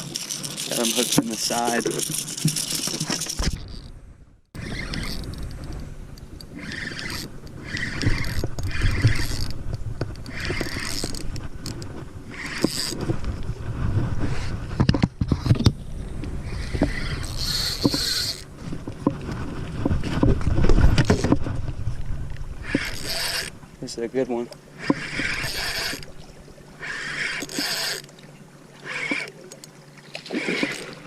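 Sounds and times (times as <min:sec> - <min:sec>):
wind and water rumbling: 0:00.0 - 0:31.0
sharp clicks and knocks: 0:14.8 - 0:15.8.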